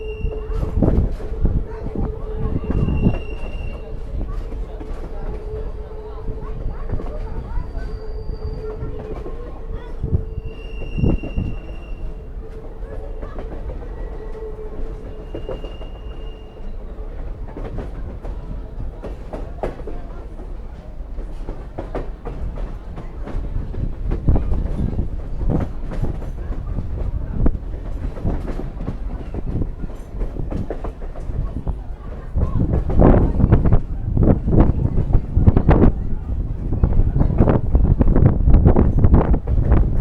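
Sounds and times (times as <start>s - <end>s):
train wheel squeal: 0.0s - 19.9s
train rumbling along track: 0.0s - 40.0s.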